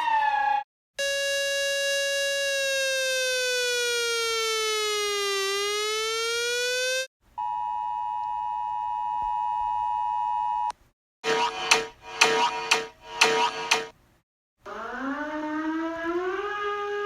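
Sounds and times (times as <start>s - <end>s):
buzzy electronic alarm tone: 1.0s - 7.1s, 11.2s - 13.9s.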